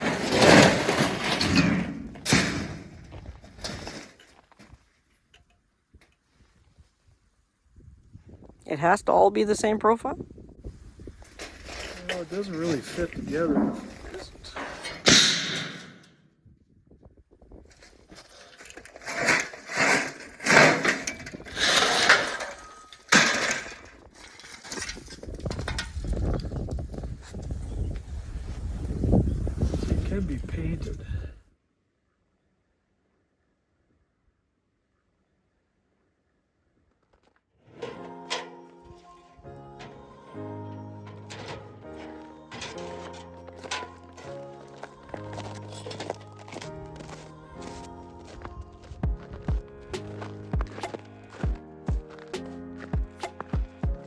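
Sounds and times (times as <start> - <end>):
metal sheets clattering and scraping: 0.0 - 4.4, 11.3 - 16.1, 18.3 - 25.9, 41.1 - 44.4
sharp metal clank: 14.6 - 16.1.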